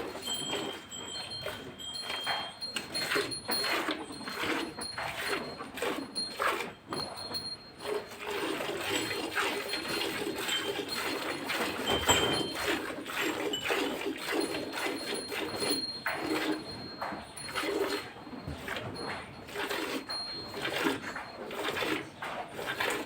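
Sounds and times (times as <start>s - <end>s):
milk squirting into a pail: 7.8s - 16.6s.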